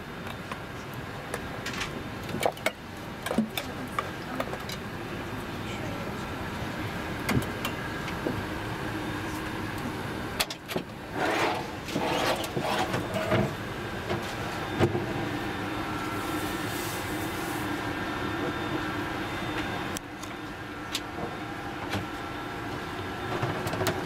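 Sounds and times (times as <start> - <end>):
handling or motor sound: 10.4 - 15.0.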